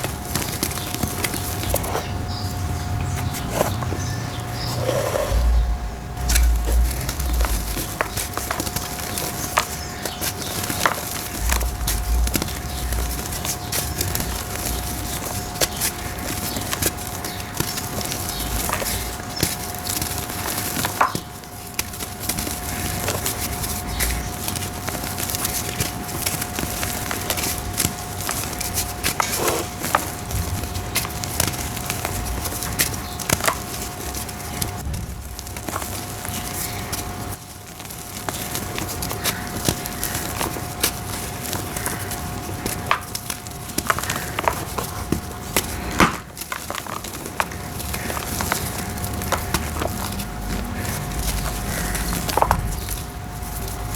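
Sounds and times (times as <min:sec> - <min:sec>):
dried dirt crumbling: 0:00.0 - 0:53.9
low thumps: 0:03.8 - 0:09.0, 0:11.4 - 0:15.0.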